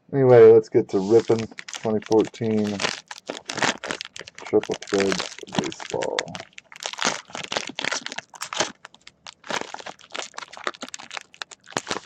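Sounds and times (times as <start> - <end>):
plastic wrapping crinkling and tearing: 1.0 - 12.0.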